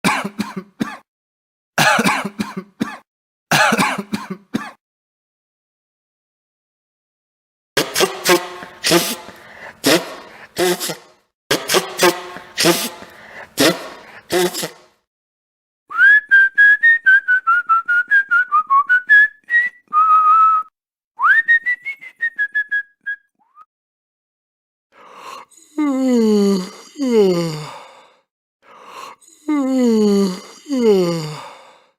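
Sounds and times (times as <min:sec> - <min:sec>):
person clearing throat: 0:00.0 - 0:01.1, 0:01.8 - 0:04.8, 0:07.8 - 0:14.9
person coughing: 0:00.0 - 0:01.1, 0:01.8 - 0:04.8, 0:07.8 - 0:14.9
person whistling a tune: 0:15.9 - 0:23.7.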